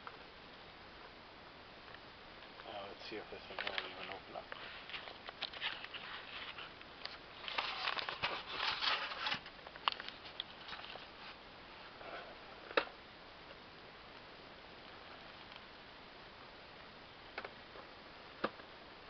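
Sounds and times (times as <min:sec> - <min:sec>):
plastic rustling and scraping: 0:03.4 - 0:11.4.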